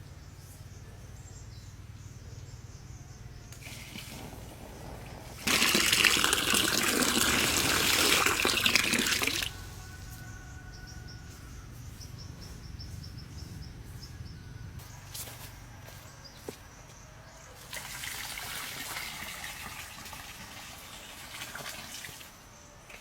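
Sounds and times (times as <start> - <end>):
water pouring in a heavy gush: 3.6 - 9.6, 17.6 - 22.3
faint water trickle: 17.5 - 23.0.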